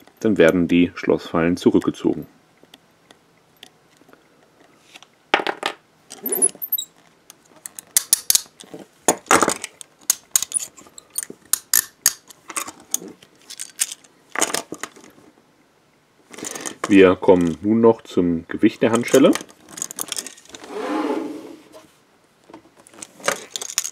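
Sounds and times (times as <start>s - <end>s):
handcuffs clicking and clinking: 7.6s - 8.7s, 9.7s - 14.1s, 23.2s - 23.9s.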